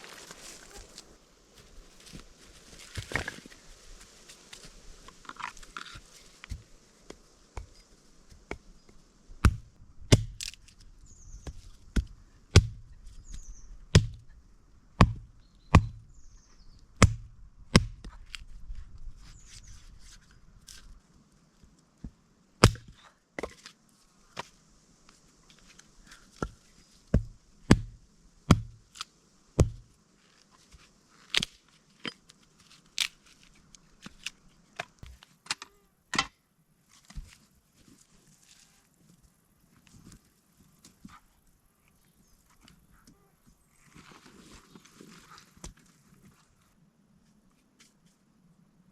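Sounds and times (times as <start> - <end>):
axe chopping wood: 9.4 - 10.6, 11.5 - 12.9, 13.9 - 14.2, 15.0 - 16.0, 17.0 - 18.2, 22.6 - 23.6, 26.4 - 28.8, 29.6 - 29.8.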